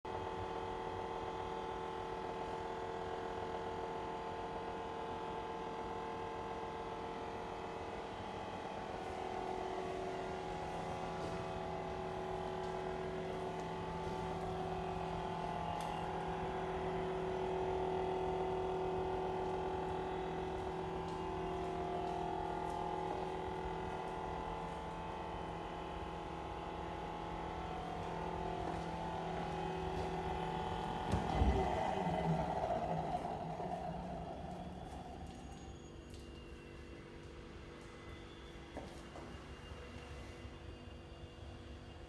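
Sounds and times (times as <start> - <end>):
refrigerator motor humming: 6.4 - 36.2.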